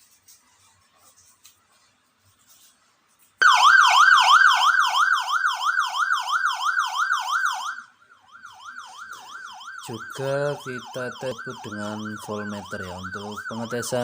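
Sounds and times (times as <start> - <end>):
fast yelping siren: 3.4 - 14.0.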